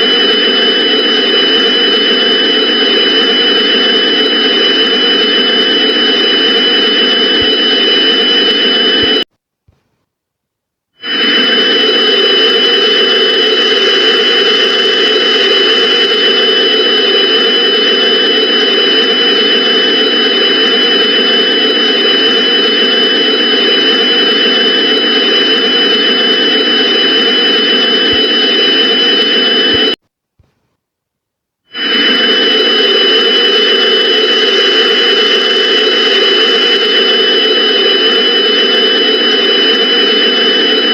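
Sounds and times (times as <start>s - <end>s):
loud noise drone: 0.0s - 9.3s, 11.0s - 30.0s, 31.7s - 40.9s
high steady tones: 11.0s - 30.0s, 31.7s - 40.9s.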